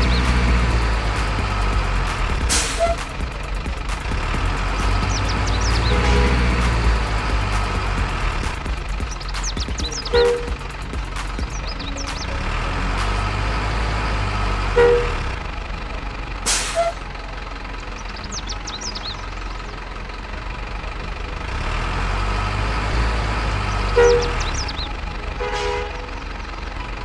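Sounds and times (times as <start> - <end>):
truck engine running: 0.0 - 13.3
short hiss: 2.2 - 4.9, 16.5 - 17.0.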